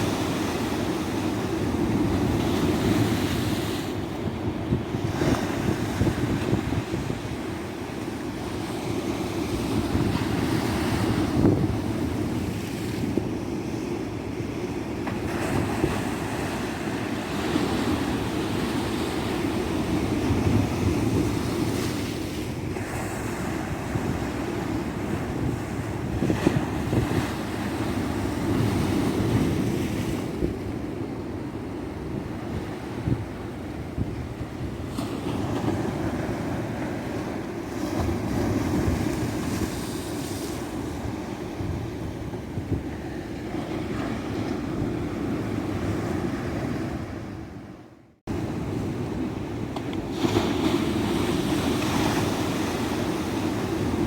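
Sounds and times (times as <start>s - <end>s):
wind on microphone: 0.0s - 13.3s, 17.3s - 47.7s
sea waves breaking on beach: 48.3s - 54.0s.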